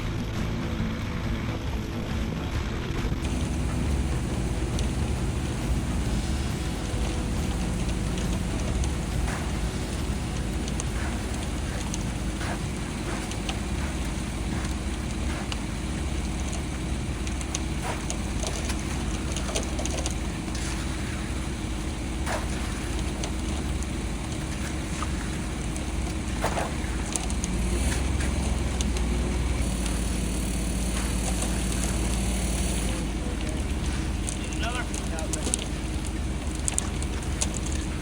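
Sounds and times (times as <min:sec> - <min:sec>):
engine running steadily: 0:00.0 - 0:38.0
steady tone: 0:03.2 - 0:26.4.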